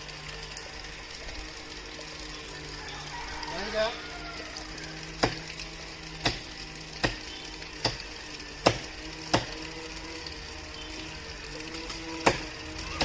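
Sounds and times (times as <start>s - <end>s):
chopping blows into wood: 8.6s - 9.6s.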